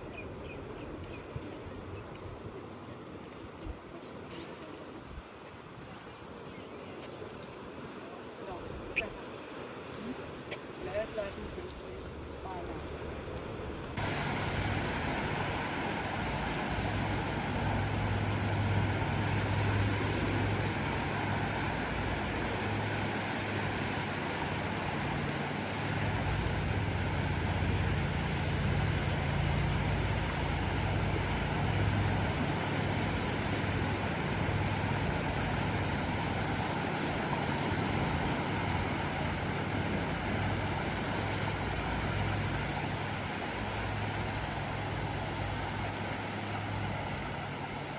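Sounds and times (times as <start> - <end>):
continuous rushing noise: 10.9 - 47.9
steady engine drone: 11.6 - 47.9.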